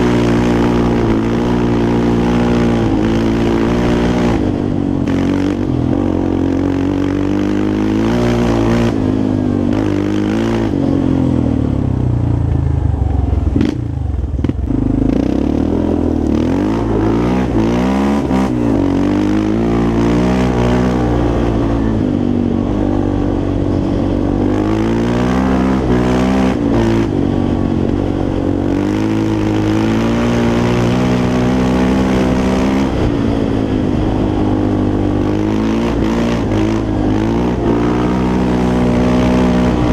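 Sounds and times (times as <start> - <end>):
quad engine revving: 0.0 - 11.8, 13.5 - 39.9.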